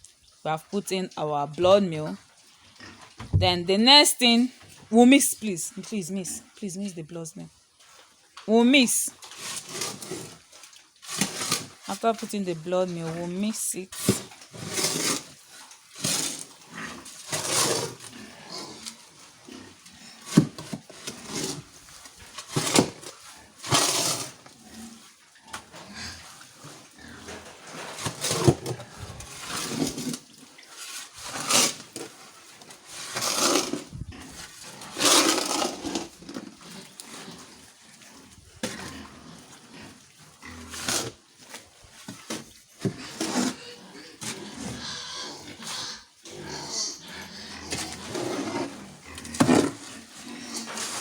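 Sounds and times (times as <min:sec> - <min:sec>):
pigs grunting: 0:16.1 - 0:20.4, 0:22.7 - 0:30.2, 0:33.2 - 0:41.2, 0:42.8 - 0:51.0.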